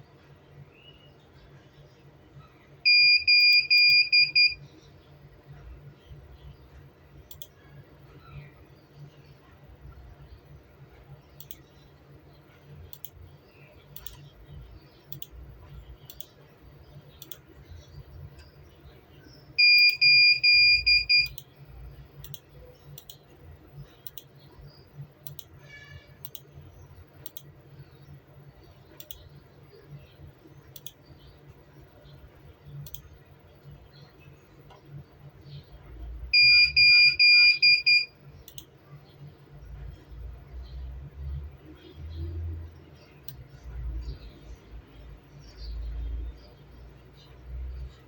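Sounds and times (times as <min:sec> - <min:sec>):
low steady hum: 0:00.0 - 0:48.0
electronic beeper beeping: 0:02.9 - 0:04.6, 0:19.6 - 0:21.4, 0:36.3 - 0:38.1
irregular clicking: 0:06.7 - 0:07.6, 0:11.3 - 0:11.9, 0:12.8 - 0:16.4, 0:17.0 - 0:18.7, 0:22.2 - 0:24.6, 0:25.2 - 0:25.6, 0:26.2 - 0:27.6, 0:28.9 - 0:29.4, 0:30.6 - 0:31.4, 0:32.7 - 0:33.3, 0:37.6 - 0:38.8, 0:43.2 - 0:43.5.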